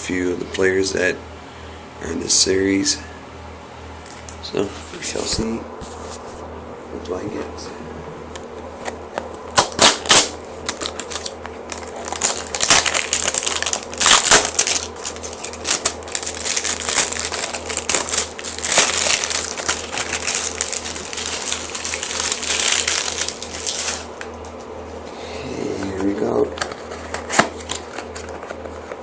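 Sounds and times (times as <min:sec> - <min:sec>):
packaging crinkling: 0:08.8 - 0:24.6, 0:25.9 - 0:29.0
packaging ripping: 0:09.6 - 0:24.2, 0:26.6 - 0:28.9.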